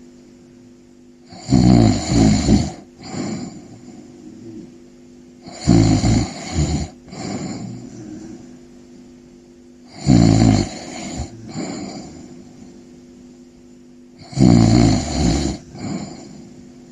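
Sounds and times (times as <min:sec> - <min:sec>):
loud low snores: 0:01.2 - 0:04.2, 0:05.4 - 0:08.4, 0:09.9 - 0:12.8, 0:14.2 - 0:16.9.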